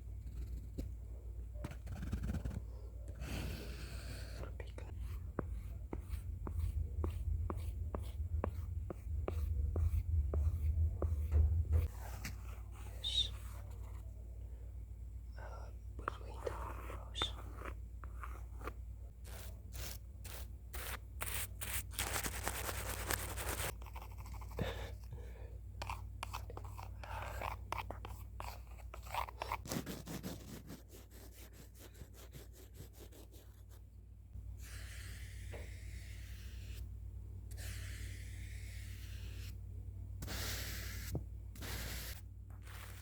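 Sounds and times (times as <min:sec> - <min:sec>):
scratching and brushing: 0:16.2 - 0:24.6, 0:40.3 - 0:43.0.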